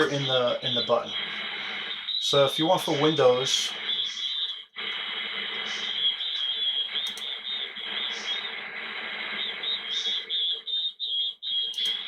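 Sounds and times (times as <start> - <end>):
radio receiver hiss: 0.0 - 11.0, 11.6 - 12.0
warbling chirping radio tones: 0.0 - 12.0
short clicks: 7.0 - 7.4, 11.7 - 12.0.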